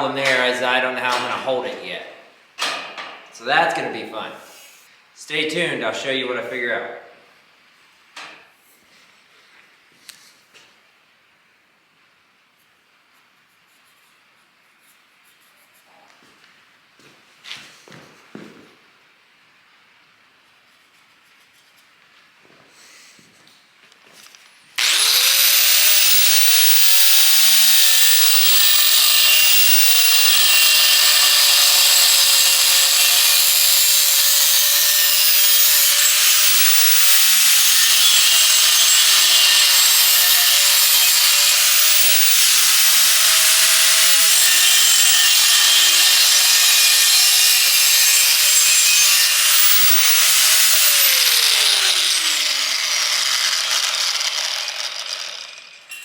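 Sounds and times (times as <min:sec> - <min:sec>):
angle grinder grinding steel: 0:24.8 - 0:56.0.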